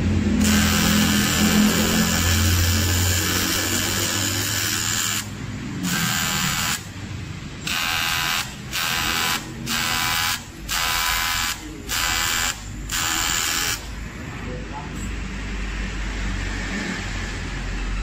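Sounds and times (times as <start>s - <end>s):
welding arc buzzing: 0.0s - 14.3s.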